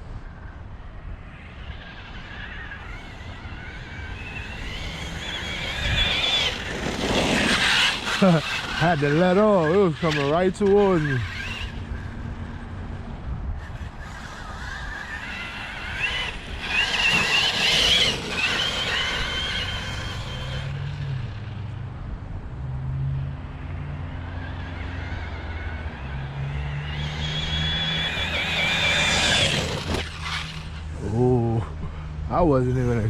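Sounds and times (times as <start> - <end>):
electric motor whining: 1.4 - 12.9, 13.6 - 21.6, 24.2 - 31.2.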